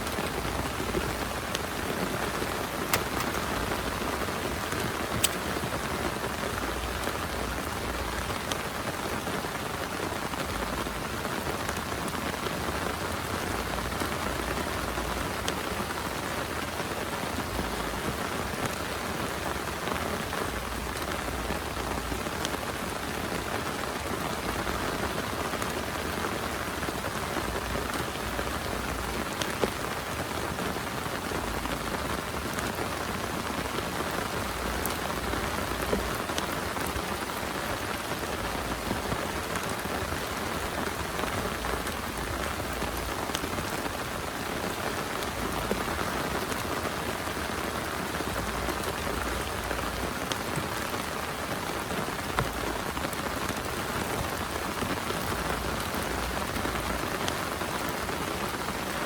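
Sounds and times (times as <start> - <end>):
sharp raindrop hits: 0.0 - 8.6
heavy rain falling: 0.0 - 59.0.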